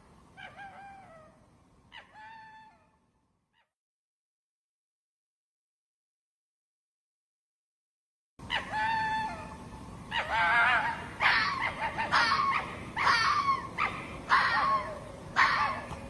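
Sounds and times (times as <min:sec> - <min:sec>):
fox yelping cries: 0:00.4 - 0:02.9, 0:08.5 - 0:16.0.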